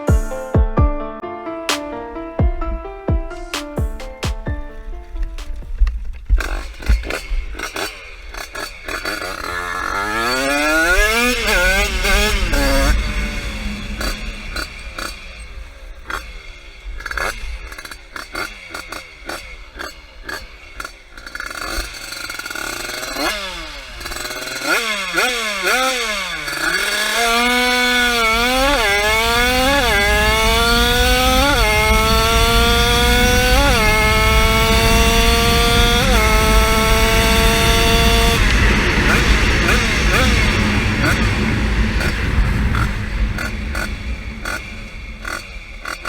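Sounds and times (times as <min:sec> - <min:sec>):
motorcycle engine revving: 0:01.7 - 0:46.0.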